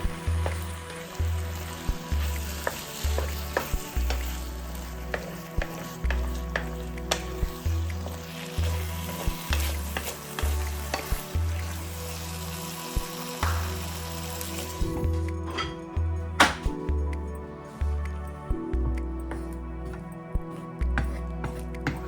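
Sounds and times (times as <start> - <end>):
background music with bass: 0.0 - 22.0
food sizzling in a frying pan: 1.0 - 15.0.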